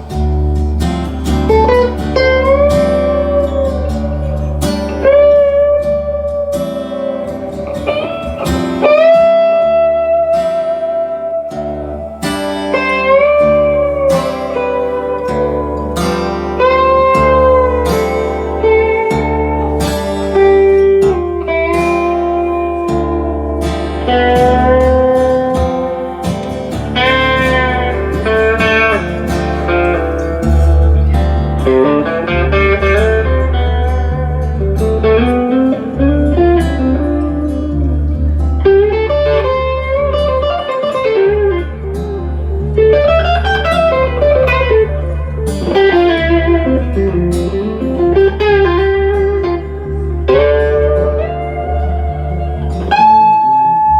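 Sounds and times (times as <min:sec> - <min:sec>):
electric guitar solo: 0:00.0 - 0:53.9
bass line: 0:12.7 - 0:53.9.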